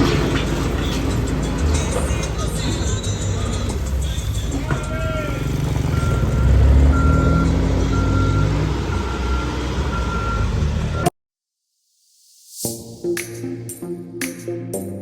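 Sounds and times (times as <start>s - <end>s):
music: 0.0s - 5.5s, 12.6s - 15.0s
diesel engine running: 0.0s - 11.1s
reversing alarm beeping: 5.5s - 11.1s.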